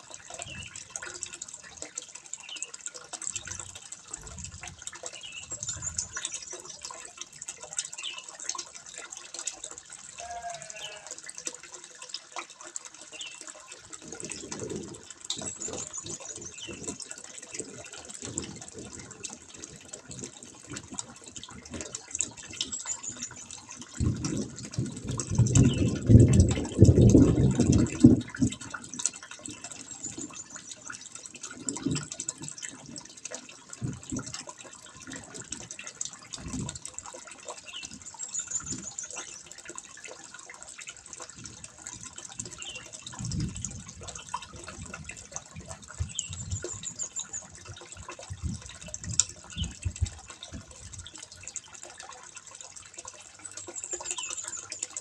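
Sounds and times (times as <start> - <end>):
water trickling into pond: 0.0 - 55.0.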